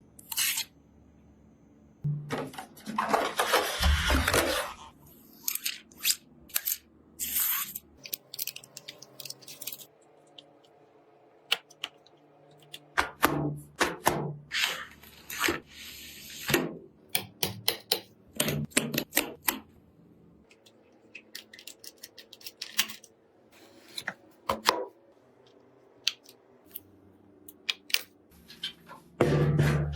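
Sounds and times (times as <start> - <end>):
plastic and metal parts clattering: 2.3 - 4.8.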